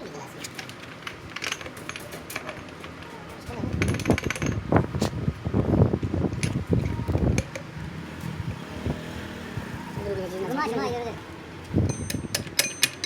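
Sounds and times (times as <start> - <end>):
fan-like hum: 0.0 - 13.0
metal parts knocking and clunking: 0.4 - 5.1, 6.2 - 7.7, 11.8 - 13.0.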